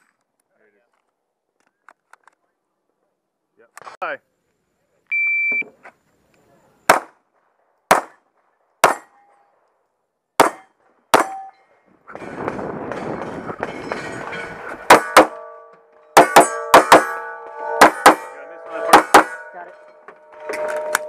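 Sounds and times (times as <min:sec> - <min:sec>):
gunshots: 0:06.9 - 0:07.2, 0:07.9 - 0:08.2, 0:08.8 - 0:09.1, 0:10.4 - 0:11.4, 0:16.2 - 0:17.2
steel targets ringing: 0:10.4 - 0:21.0.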